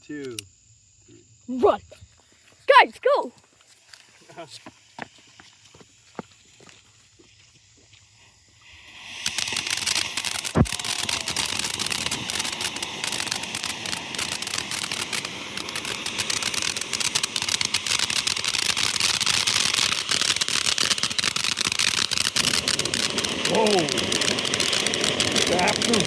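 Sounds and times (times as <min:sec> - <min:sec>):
fireworks crackling: 0:03.9 - 0:06.8, 0:08.2 - 0:26.0
loud firework bang: 0:10.5 - 0:14.5.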